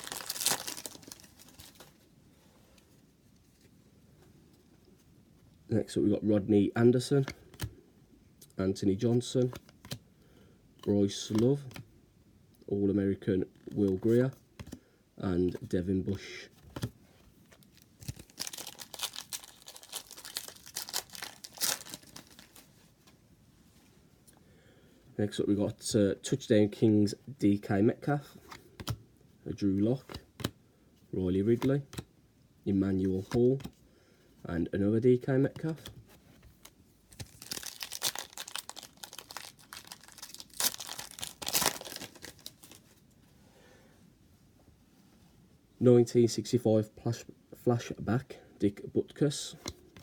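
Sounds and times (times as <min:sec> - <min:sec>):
wrapper crinkling and tearing: 0:00.0 - 0:02.0, 0:17.6 - 0:22.7, 0:37.1 - 0:42.8.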